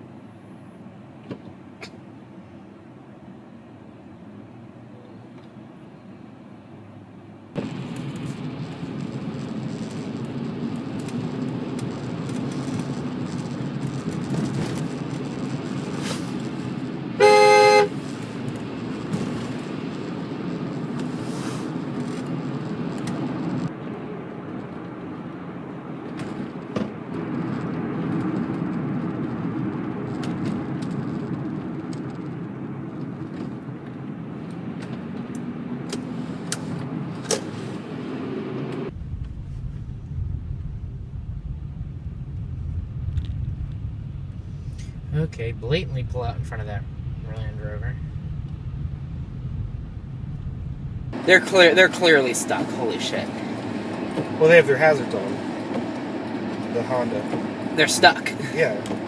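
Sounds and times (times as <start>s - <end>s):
vehicle and road noise: 0.0s - 59.0s
car horn: 17.2s - 18.1s.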